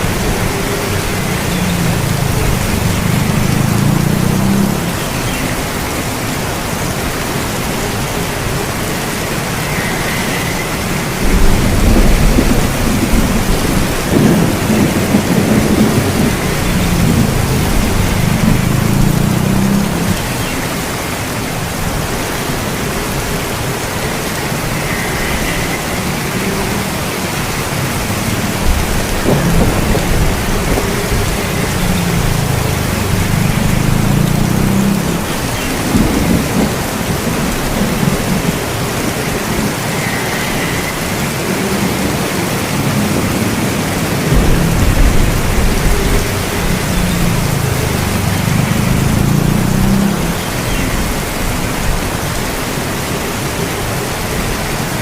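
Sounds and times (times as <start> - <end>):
low rolling thunder: 0.0 - 5.7, 11.2 - 20.4, 27.8 - 39.2, 44.2 - 52.0
steady rain falling: 0.0 - 55.0.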